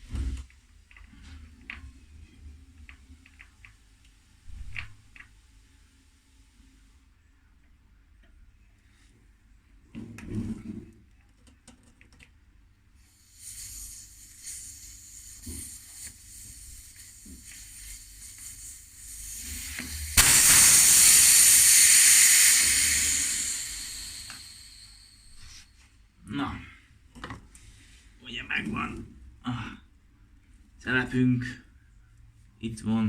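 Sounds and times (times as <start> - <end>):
air hissing from tyre valve: 13.0 - 25.8.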